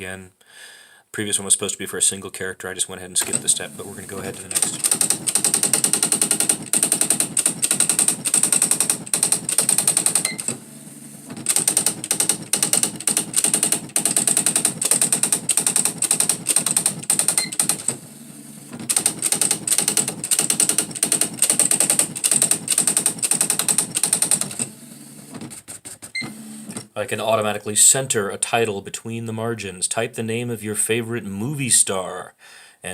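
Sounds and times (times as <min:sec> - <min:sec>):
electronic typewriter printing: 0:03.2 - 0:26.9.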